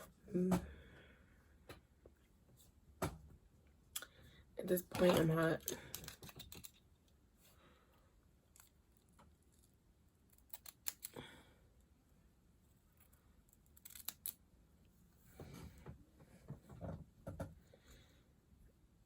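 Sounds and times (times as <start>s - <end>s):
scissors snipping: 10.3s - 11.2s.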